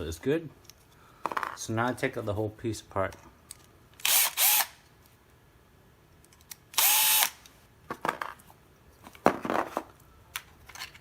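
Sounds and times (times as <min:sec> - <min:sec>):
power drill burst: 0:04.0 - 0:04.8, 0:06.8 - 0:07.4.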